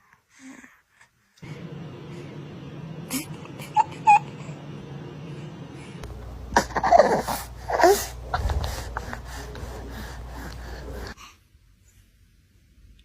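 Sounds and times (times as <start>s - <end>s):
low steady hum: 1.4s - 11.3s
baby fussing and whimpering: 3.1s - 4.7s, 6.5s - 11.4s.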